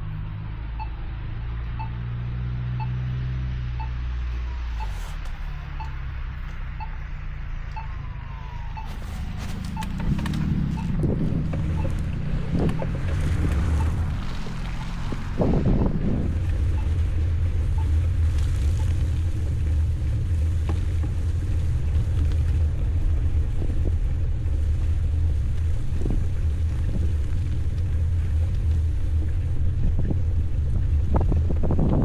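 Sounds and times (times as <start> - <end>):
wind buffeting microphone: 8.7 - 32.0.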